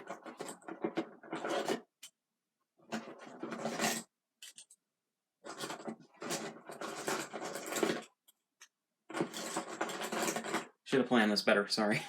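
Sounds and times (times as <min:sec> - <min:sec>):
plastic toy keys scraping: 0:00.0 - 0:02.1, 0:02.9 - 0:04.8, 0:05.5 - 0:08.1, 0:09.1 - 0:10.7.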